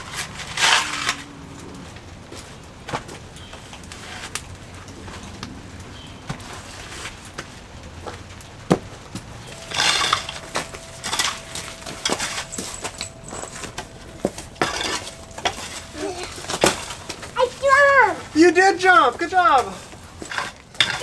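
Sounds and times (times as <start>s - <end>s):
gritty stone scrape: 9.5s - 21.0s.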